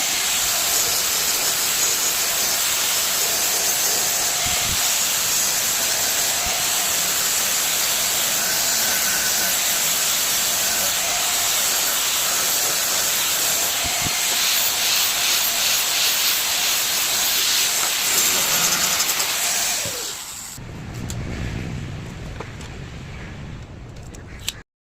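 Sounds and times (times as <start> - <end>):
arc welding hiss: 0.0 - 20.6
low rumble: 20.6 - 24.3.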